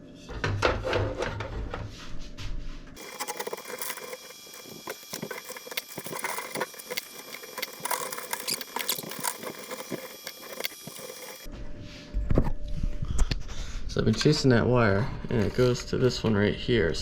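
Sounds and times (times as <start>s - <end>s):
computer parts clicking and rattling: 3.0s - 11.5s.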